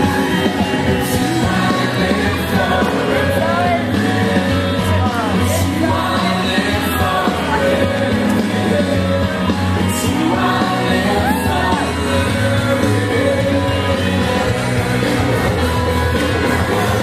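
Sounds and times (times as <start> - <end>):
music with singing: 0.0 - 17.0.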